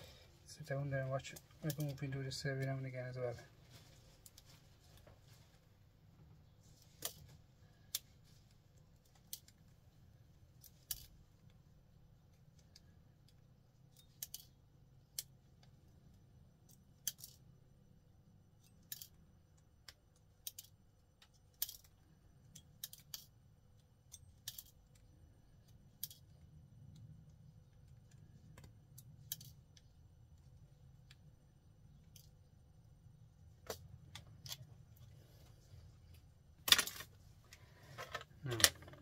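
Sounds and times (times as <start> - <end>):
faint low hum: 0.0 - 39.0
small pliers clicking: 12.6 - 14.6, 19.8 - 23.4, 24.1 - 26.3, 28.1 - 29.9.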